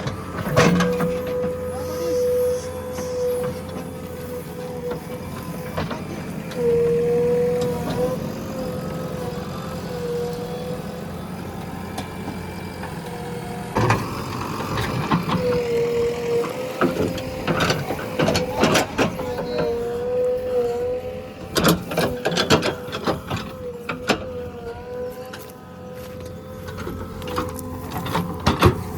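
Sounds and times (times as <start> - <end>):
diesel engine whine: 0.0 - 28.9.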